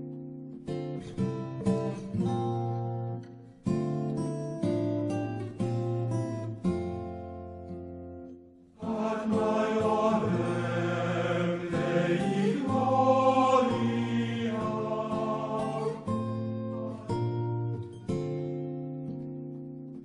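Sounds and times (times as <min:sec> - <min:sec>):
acoustic guitar: 0:00.0 - 0:20.0
chant-like singing: 0:08.8 - 0:17.7.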